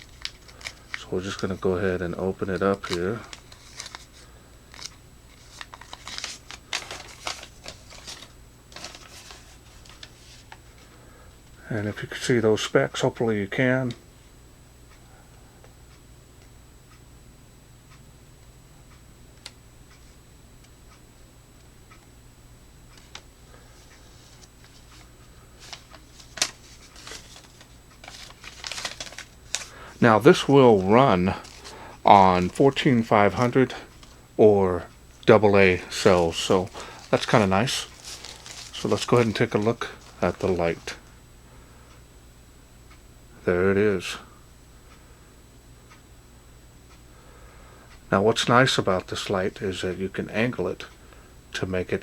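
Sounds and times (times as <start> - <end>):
packaging rustling and scraping: 0.0 - 1.4, 2.4 - 10.9, 23.0 - 34.2, 35.4 - 41.0.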